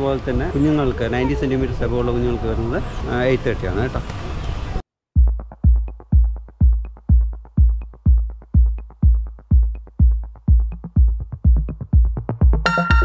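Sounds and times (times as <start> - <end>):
electronic dance music: 5.2 - 13.0.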